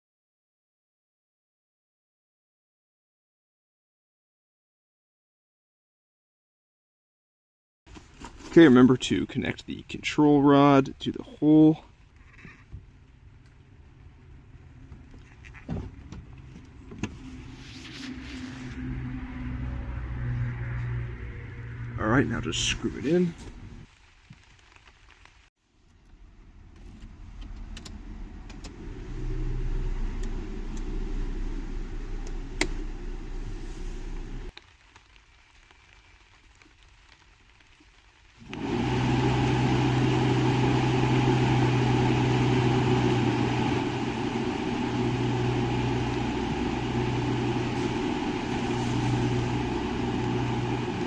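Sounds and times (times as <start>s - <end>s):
low hum: 16.4s - 23.9s, 26.1s - 34.5s, 38.5s - 51.0s
car engine running: 26.6s - 34.5s, 38.5s - 51.0s.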